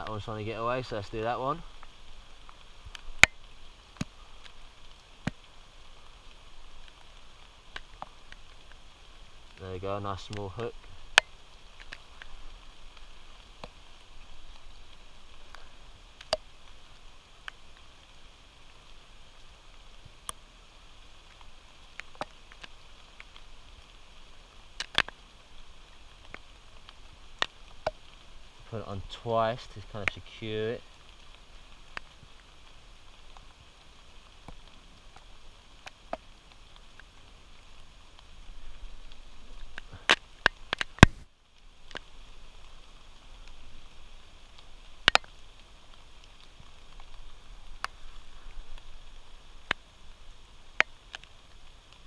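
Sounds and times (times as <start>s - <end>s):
faint steady hiss: 0.0s - 52.0s
rain patter: 0.0s - 52.0s
small clicks and taps: 24.8s - 25.2s, 45.1s - 45.4s.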